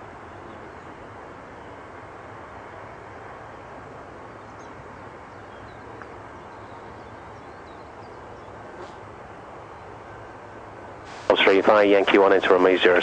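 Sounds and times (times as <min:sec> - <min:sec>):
background hiss: 0:06.2 - 0:13.0.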